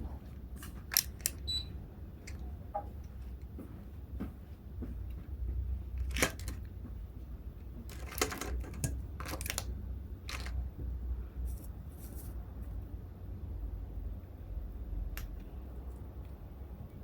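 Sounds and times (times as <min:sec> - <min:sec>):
crab shells cracking: 0:00.9 - 0:01.4, 0:06.0 - 0:06.6, 0:07.9 - 0:10.6.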